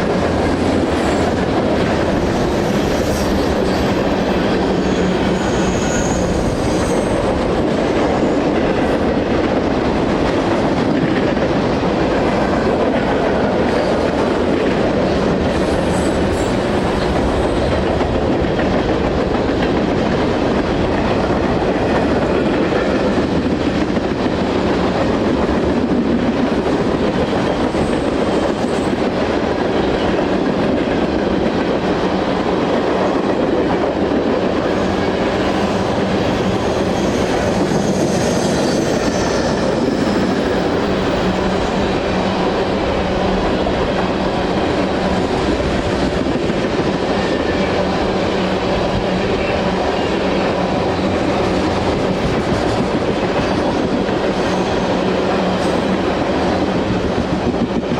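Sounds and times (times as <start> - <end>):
freight train wheels rumbling: 0.0 - 57.9
high wheel squeals: 4.7 - 7.4, 36.6 - 40.4.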